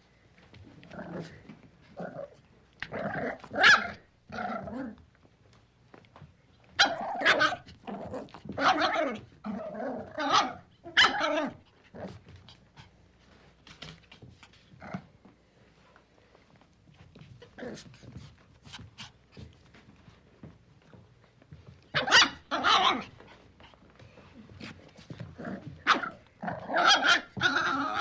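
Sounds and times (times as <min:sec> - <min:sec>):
puppy barking and growling: 0:02.0 - 0:05.0, 0:06.8 - 0:12.2, 0:21.9 - 0:23.2, 0:25.4 - 0:28.0.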